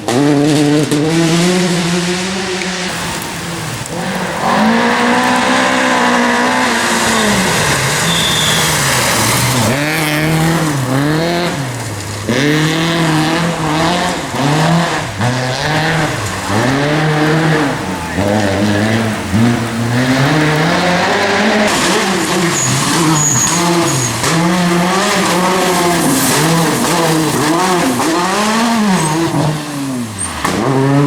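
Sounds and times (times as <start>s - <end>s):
rally car engine revving: 0.0s - 31.0s.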